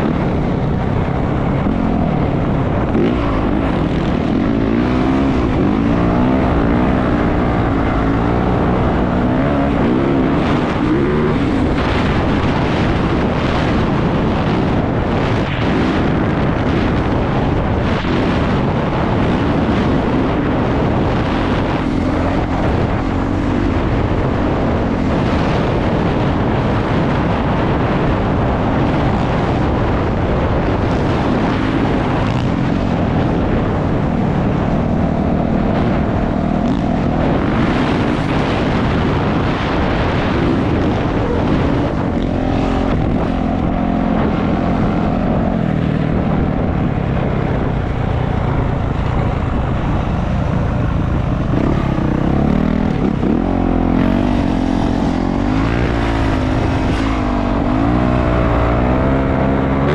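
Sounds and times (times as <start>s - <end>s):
dirt bike engine revving: 0.0s - 59.9s
wind on microphone: 0.0s - 59.9s.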